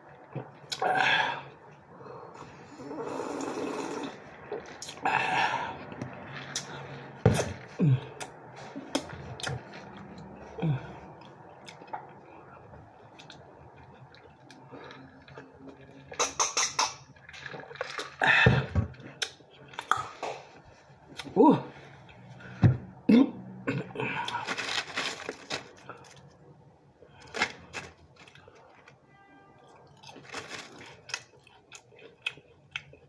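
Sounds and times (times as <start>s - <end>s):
person chewing with wet smacks: 5.8s - 18.2s, 30.9s - 33.0s
sharp mouth clicks: 16.1s - 17.1s.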